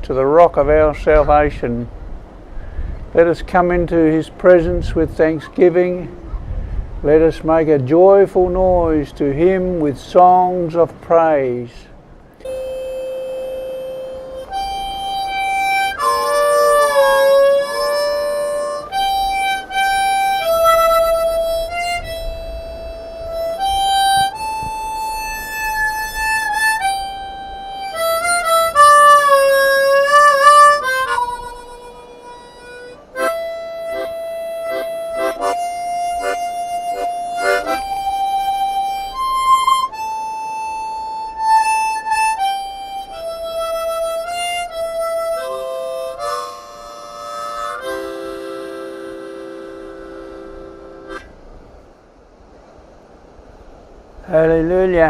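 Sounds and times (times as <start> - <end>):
harmonica playing slow melody: 12.4 - 51.8.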